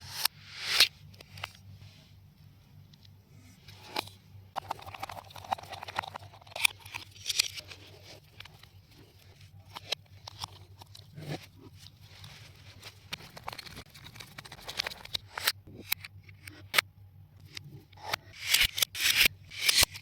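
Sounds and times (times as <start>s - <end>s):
crunching and scraping handling noises: 3.0s - 15.6s.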